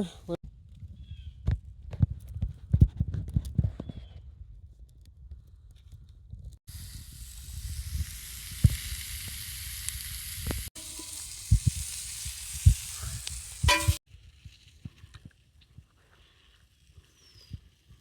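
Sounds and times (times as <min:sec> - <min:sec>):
food sizzling over a campfire: 0:06.7 - 0:18.0.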